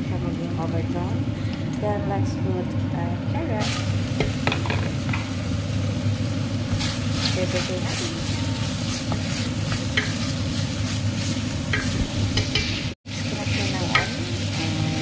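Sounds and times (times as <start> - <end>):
vegetables sizzling in a pan: 0.0 - 15.0
utensil scraping a pan: 6.7 - 14.7.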